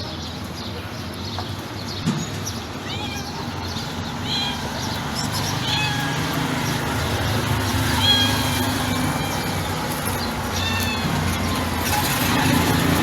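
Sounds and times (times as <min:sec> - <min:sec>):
cat meowing softly: 0:02.8 - 0:04.7, 0:05.4 - 0:06.3, 0:07.9 - 0:09.8, 0:10.4 - 0:11.5.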